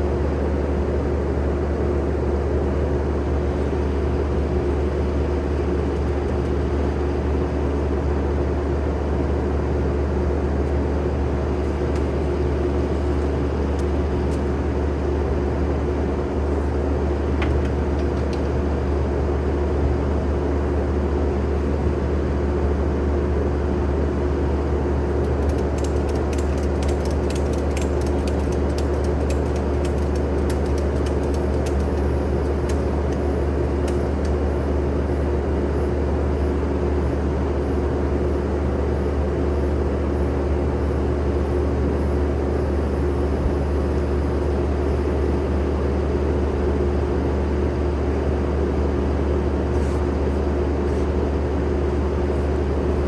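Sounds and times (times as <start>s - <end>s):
diesel engine running: 0.0s - 39.8s.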